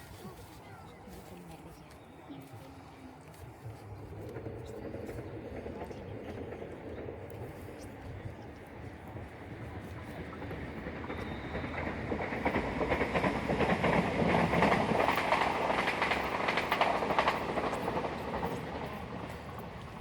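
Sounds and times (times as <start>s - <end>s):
sheep hooves clattering: 10.2s - 20.0s.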